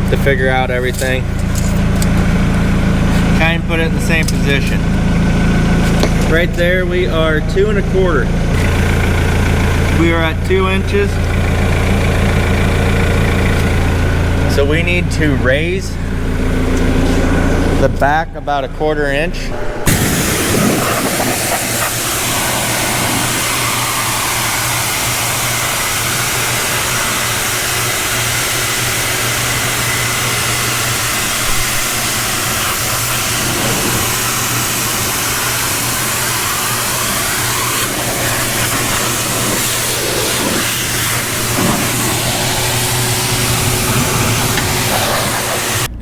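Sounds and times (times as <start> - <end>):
pressure washer engine hum: 0.0 - 46.0
water jet hissing: 19.6 - 46.0.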